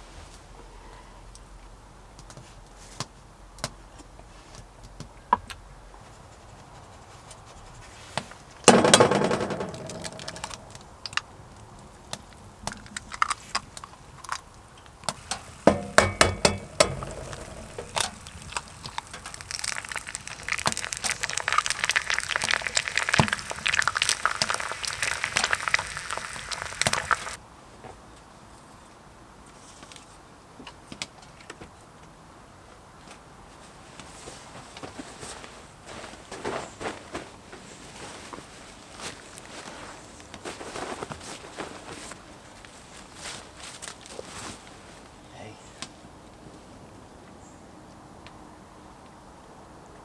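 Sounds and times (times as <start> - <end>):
fire crackling: 7.8 - 27.4
cookware clatter: 8.7 - 10.6, 15.2 - 18.2
cookware clicks and knocks: 8.7 - 10.6, 15.2 - 18.1.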